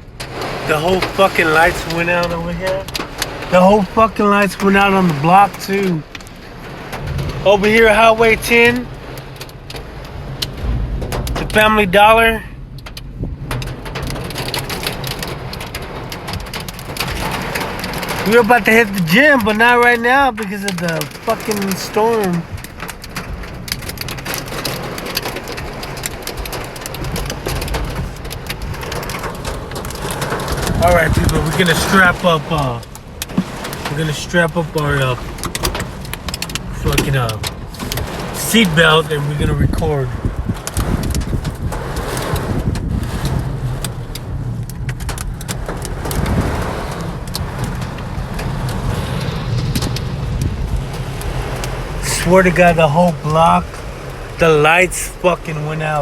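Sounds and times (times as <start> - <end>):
low rumble: 0.0 - 20.4, 22.4 - 56.0
heavy rain hitting a car: 0.0 - 56.0
storm noise hiss: 0.0 - 56.0.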